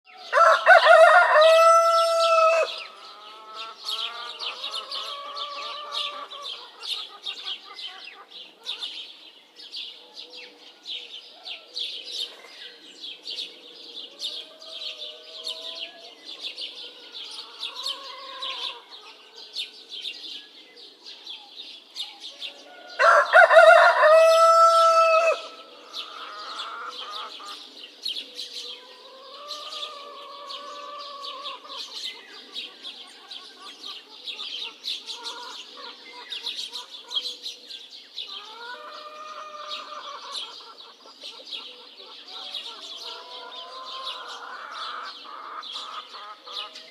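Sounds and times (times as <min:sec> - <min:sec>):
small birds chirping: 0:00.0 - 0:46.9
rooster crowing: 0:00.2 - 0:03.0, 0:22.5 - 0:27.0.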